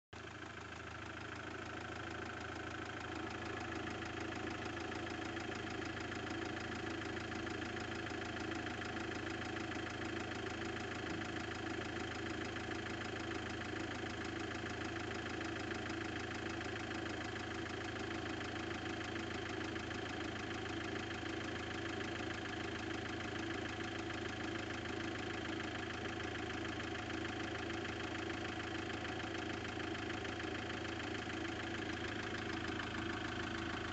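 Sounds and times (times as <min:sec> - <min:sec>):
diesel engine idling: 0:00.2 - 0:33.9
fast engine tapping: 0:25.6 - 0:33.9.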